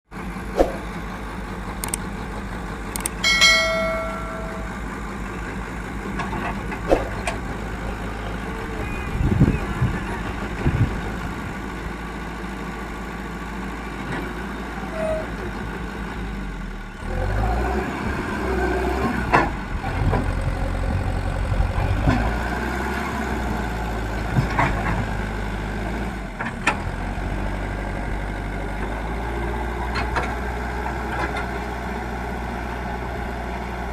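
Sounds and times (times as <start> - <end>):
diesel engine running: 0.1 - 33.9
metallic clanks: 3.1 - 4.8
short high tone: 3.2 - 5.0.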